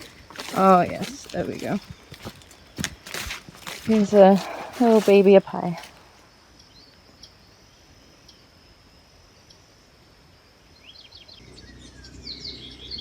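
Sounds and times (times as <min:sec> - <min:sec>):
insect drone: 0:00.0 - 0:13.0
bird chirps: 0:10.8 - 0:13.0.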